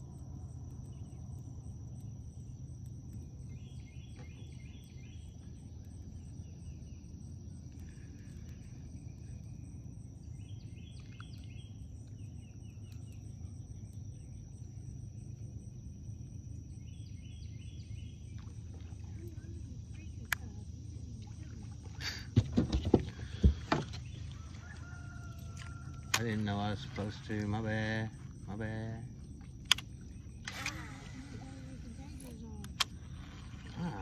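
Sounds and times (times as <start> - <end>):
high insect drone: 0.0 - 34.0.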